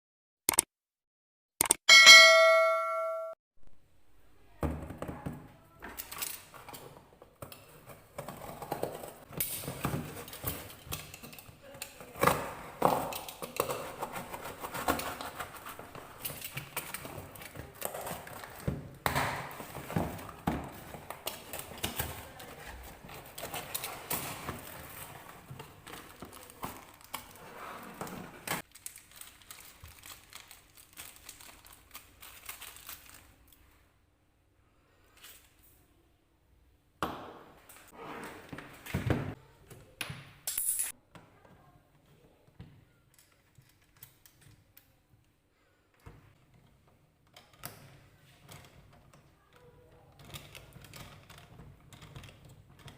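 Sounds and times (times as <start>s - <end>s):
packaging rustling: 19.5s - 27.6s, 28.5s - 33.5s.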